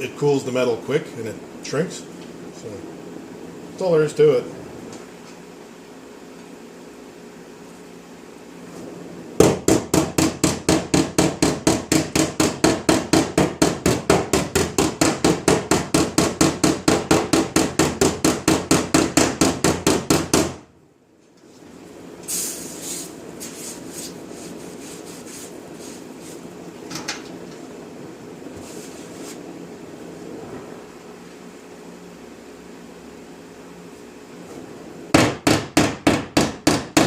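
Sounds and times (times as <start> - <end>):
hammer tapping on sheet steel: 9.4 - 20.6, 35.2 - 37.0.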